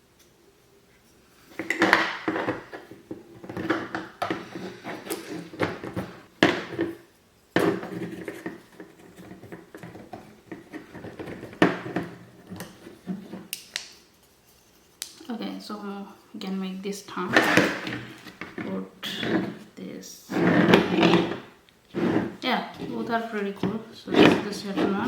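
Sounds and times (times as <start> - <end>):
small hard objects knocking: 1.6 - 13.9.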